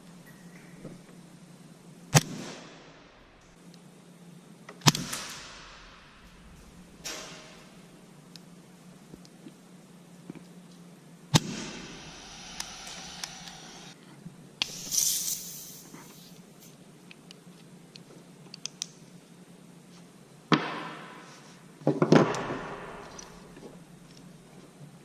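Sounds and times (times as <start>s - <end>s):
gas hiss: 11.4s - 14.0s, 14.6s - 16.4s.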